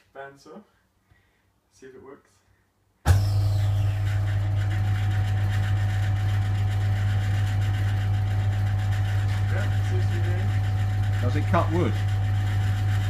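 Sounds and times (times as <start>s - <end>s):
bandsaw running with low hum: 3.1s - 13.0s.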